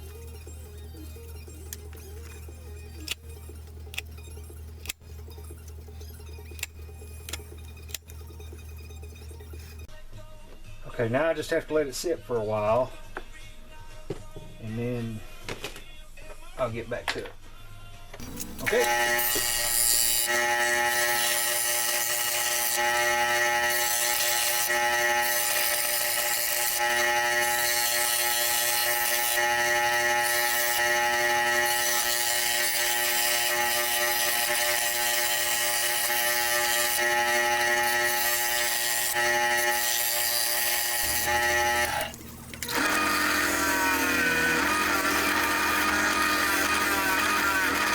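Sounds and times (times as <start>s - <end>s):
different pitched machine sound: 0.0s - 9.9s, 18.2s - 47.9s
machine motor whining: 18.2s - 47.9s.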